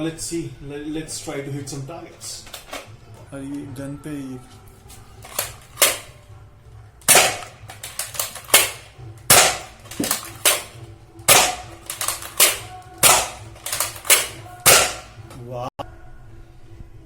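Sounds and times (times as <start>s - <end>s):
faint blaster clicks: 7.1s - 15.2s
toy blaster firing pops: 7.1s - 15.2s.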